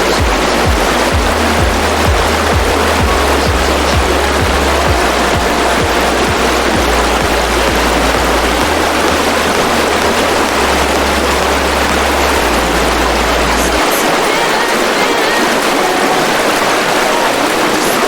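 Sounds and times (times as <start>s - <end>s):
low bass tones: 0.0s - 14.0s
waterfall rushing: 0.0s - 18.0s.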